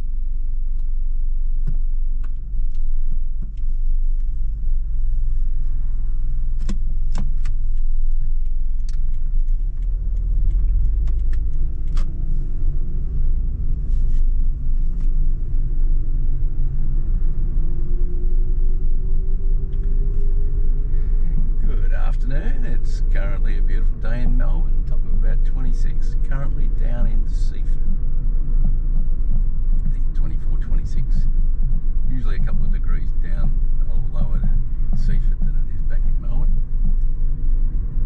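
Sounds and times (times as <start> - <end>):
road and engine rumble: 0.0 - 38.0
sharp clicks and knocks: 6.6 - 12.2.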